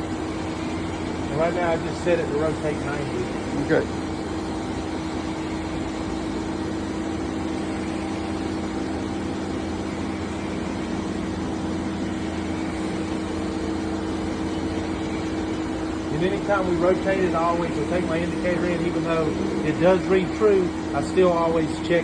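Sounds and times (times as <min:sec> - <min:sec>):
boring mill machine hum: 0:00.0 - 0:22.0.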